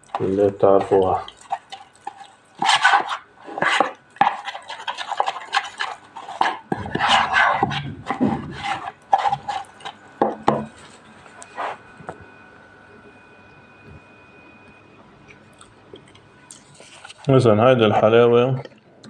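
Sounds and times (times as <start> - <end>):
spoon scraping and knocking bowl: 0.0 - 11.8.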